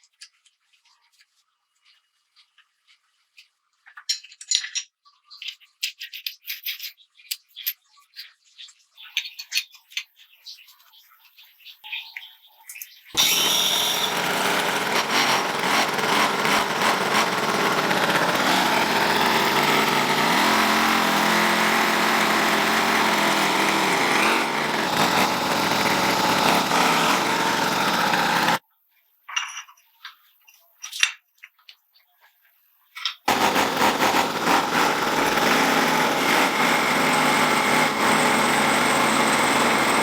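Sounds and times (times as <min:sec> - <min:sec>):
small engine running: 0:13.2 - 0:28.6, 0:33.3 - 0:40.0.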